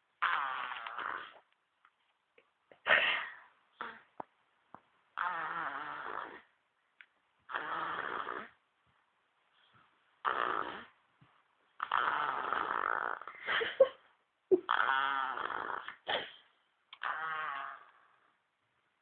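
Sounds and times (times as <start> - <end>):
baby snoring: 5.2 - 6.5, 7.5 - 8.6, 10.2 - 11.0, 11.8 - 13.3.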